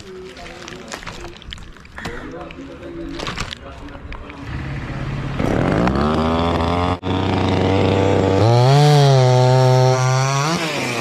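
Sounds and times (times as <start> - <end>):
chainsaw engine revving: 4.4 - 11.0.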